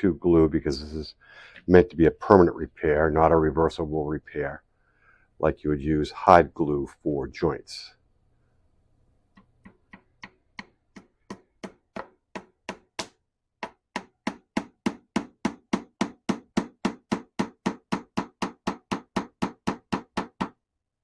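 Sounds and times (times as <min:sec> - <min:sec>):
hammer tapping wooden dowels: 0:09.4 - 0:20.5.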